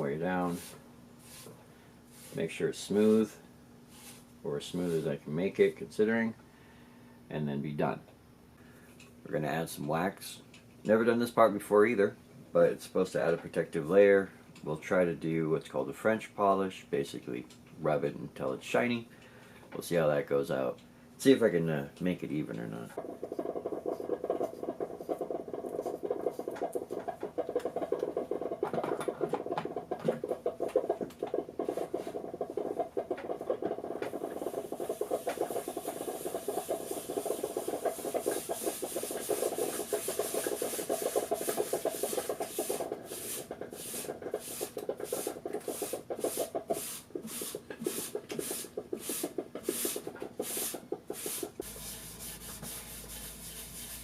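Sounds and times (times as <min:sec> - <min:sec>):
rag rubbing wooden box: 0:00.0 - 0:03.3, 0:03.9 - 0:05.2, 0:23.0 - 0:54.0.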